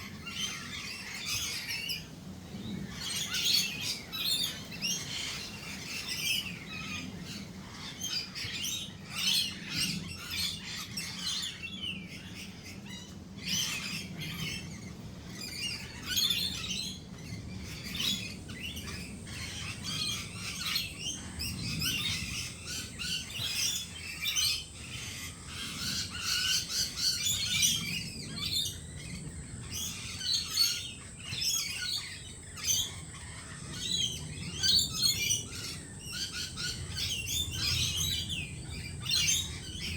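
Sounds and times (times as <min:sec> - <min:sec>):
birds chirping and twittering: 0:00.0 - 0:39.9.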